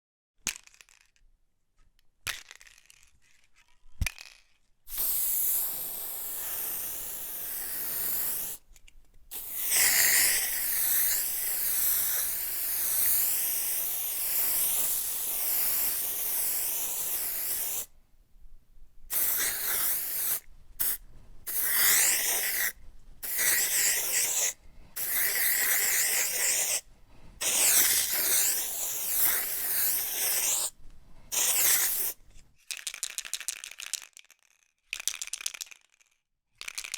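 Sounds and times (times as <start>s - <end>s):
aerosol can spraying: 4.9s - 8.7s, 9.3s - 17.9s, 19.1s - 26.8s, 27.4s - 32.2s.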